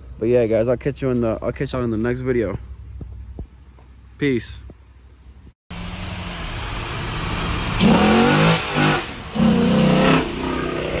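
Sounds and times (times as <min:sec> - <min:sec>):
car engine idling and revving: 0:04.9 - 0:11.0.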